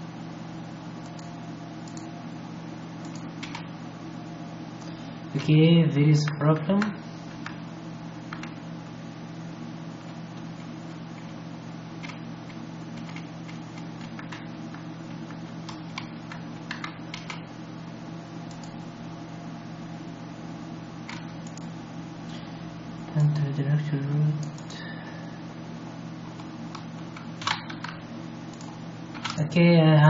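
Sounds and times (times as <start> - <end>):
low electrical hum and hiss: 0.0 - 30.0
keyboard keystrokes: 3.0 - 3.6, 12.0 - 14.4, 15.6 - 17.4, 26.4 - 29.4.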